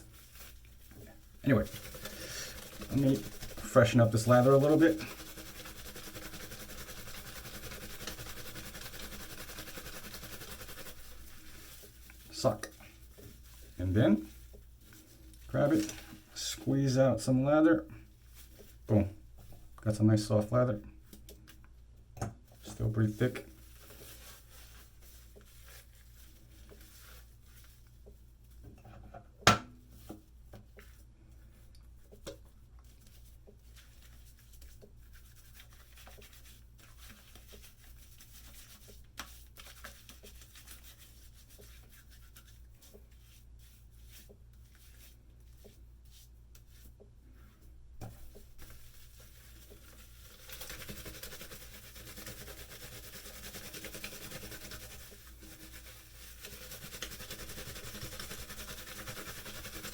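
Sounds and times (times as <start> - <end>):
shaving lather rubbing on face: 0.0 - 15.9, 22.6 - 27.9, 33.1 - 46.9, 48.6 - 59.9.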